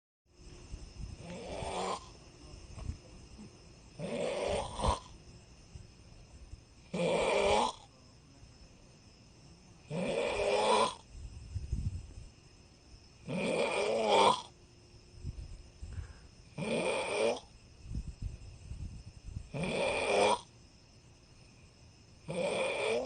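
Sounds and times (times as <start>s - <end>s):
person snoring: 1.2s - 2.1s, 4.0s - 5.1s, 7.0s - 7.9s, 9.9s - 11.0s, 19.6s - 20.5s, 22.3s - 23.0s
quiet breathing: 15.7s - 16.5s.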